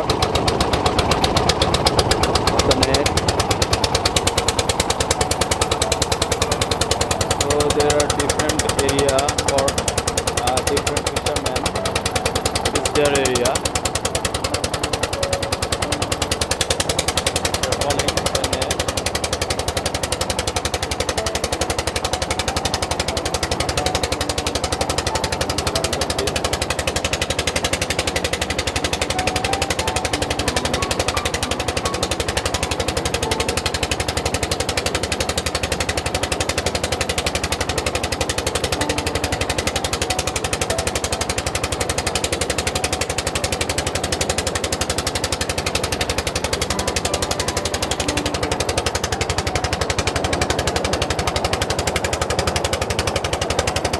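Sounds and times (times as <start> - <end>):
boat engine chugging: 0.0 - 53.9.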